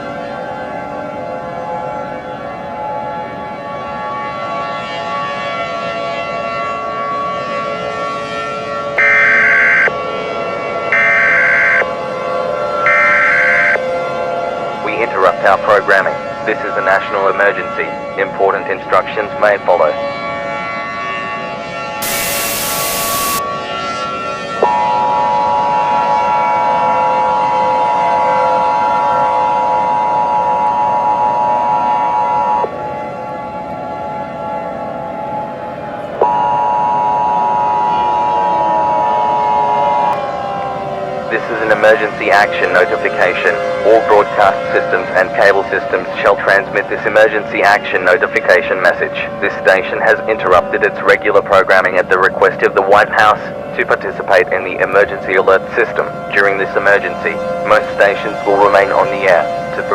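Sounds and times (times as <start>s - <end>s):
drone of held tones: 0.0s - 14.9s, 19.9s - 43.9s
steady droning background: 21.6s - 59.9s
buzzing digital data bursts: 22.0s - 23.4s
two-tone alert beep: 22.0s - 23.4s.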